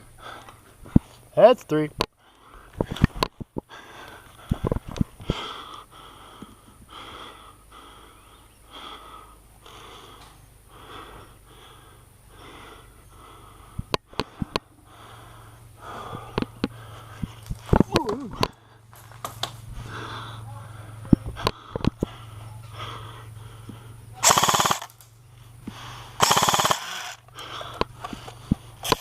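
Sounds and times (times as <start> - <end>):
person breathing hard and fast: 0.0 - 1.3, 2.1 - 29.0
sharp clicks: 24.2 - 25.1, 26.2 - 29.0.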